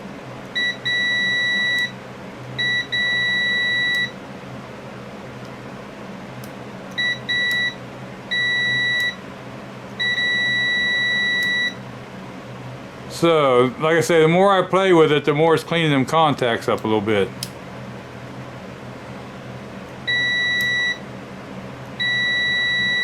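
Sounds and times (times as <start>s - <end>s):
circuit tester beeping: 0.5s - 2.0s, 2.6s - 4.2s, 6.9s - 9.2s, 10.0s - 11.8s, 20.1s - 21.1s, 22.0s - 23.0s.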